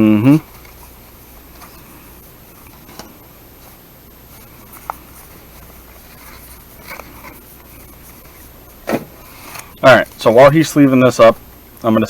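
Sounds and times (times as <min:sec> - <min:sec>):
cards sliding into plastic sleeves: 0:01.5 - 0:09.8.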